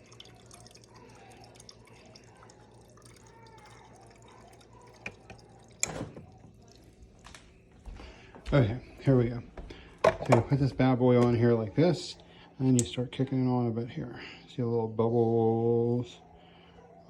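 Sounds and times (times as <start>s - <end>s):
water trickling into a container: 0.0s - 7.7s.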